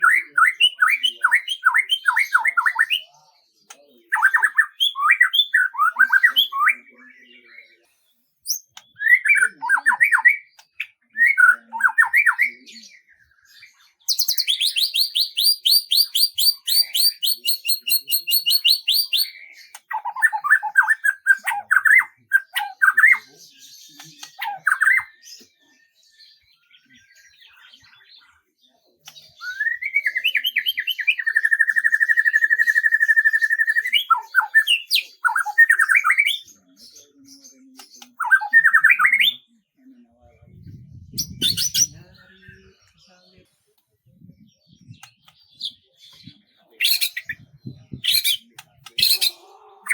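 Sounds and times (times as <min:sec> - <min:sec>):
songbird chirping and trilling: 0:00.0 - 0:49.9.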